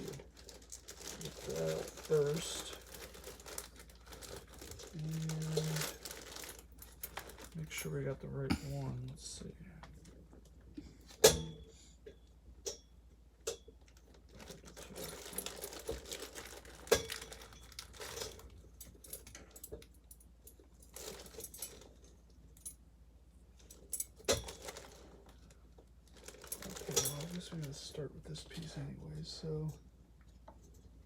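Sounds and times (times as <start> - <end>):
packaging rustling and crinkling: 0.0 - 7.6, 14.0 - 18.6, 20.9 - 22.0, 24.2 - 27.8.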